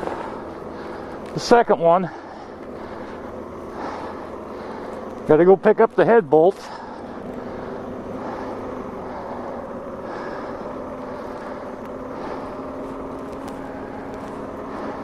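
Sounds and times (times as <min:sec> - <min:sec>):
car engine and road noise: 0:00.0 - 0:15.0.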